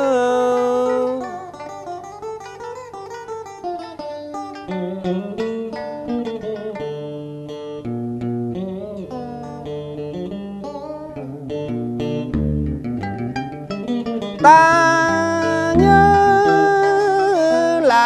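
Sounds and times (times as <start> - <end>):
plucked guitar melody: 0.0 - 18.0
bass line: 14.5 - 16.7.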